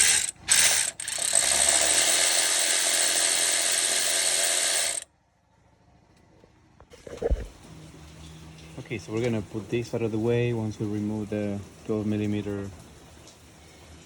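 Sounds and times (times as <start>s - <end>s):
electric ratchet spinning: 0.0s - 5.1s.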